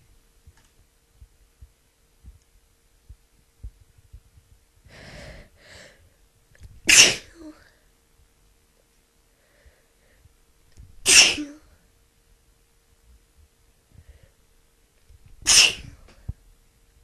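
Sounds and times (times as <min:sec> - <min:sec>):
woman gasping breaths: 0:04.9 - 0:06.2, 0:09.4 - 0:10.3
woman sneezing: 0:06.9 - 0:07.6, 0:11.1 - 0:11.6, 0:15.5 - 0:16.0.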